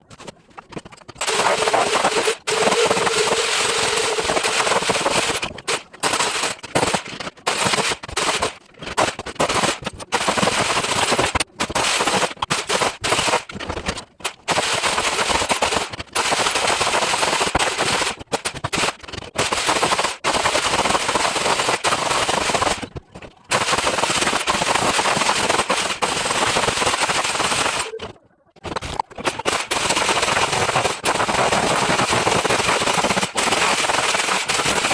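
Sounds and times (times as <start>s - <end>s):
electric chipping hammer hammering: 1.2s - 13.4s, 29.3s - 34.9s.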